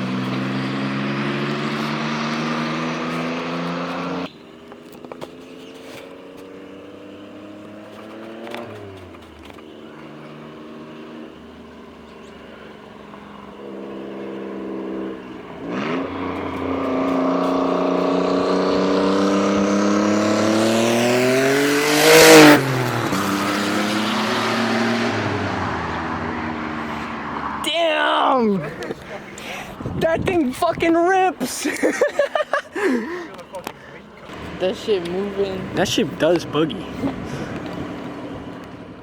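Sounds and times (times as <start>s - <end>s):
car engine revving: 0.0s - 39.0s.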